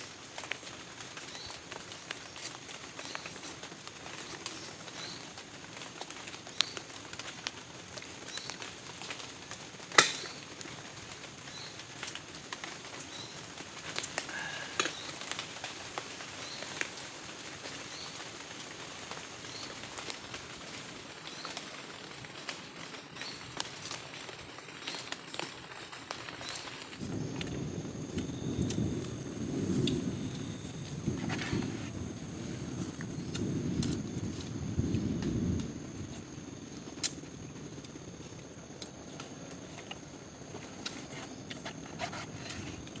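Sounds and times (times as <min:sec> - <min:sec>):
steady rain: 0:00.0 - 0:43.0
heavy raindrops ticking: 0:19.0 - 0:43.0.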